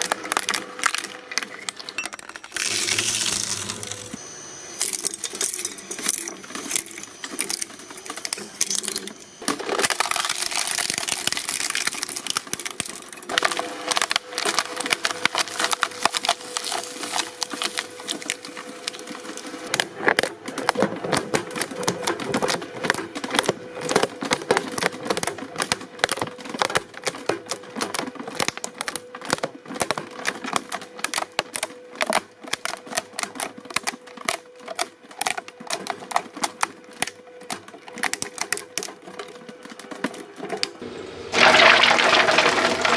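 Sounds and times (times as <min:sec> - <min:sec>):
hydraulic press crushing object: 0:00.1 - 0:19.0.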